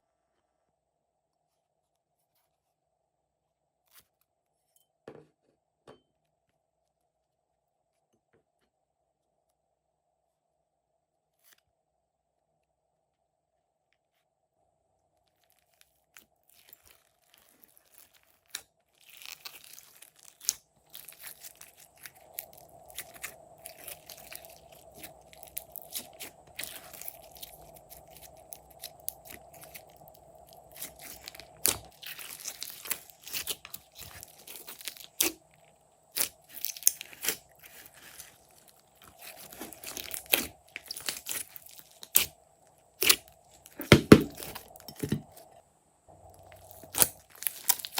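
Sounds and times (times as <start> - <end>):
slime crackling and popping: 16.4 - 42.3, 43.0 - 45.2, 46.5 - 47.9.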